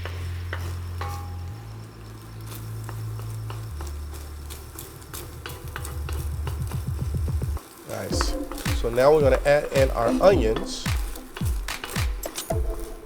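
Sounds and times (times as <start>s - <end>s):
background music with deep bass: 0.0s - 13.0s
spatula clicking against pan: 8.4s - 12.5s.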